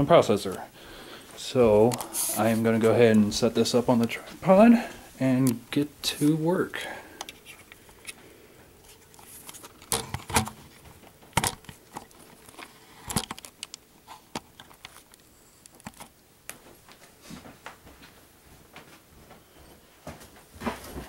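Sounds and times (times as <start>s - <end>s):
objects clicking and clattering: 8.9s - 16.1s.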